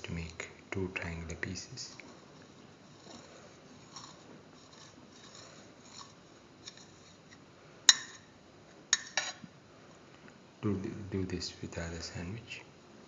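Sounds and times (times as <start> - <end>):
soft scraping: 1.9 - 7.2.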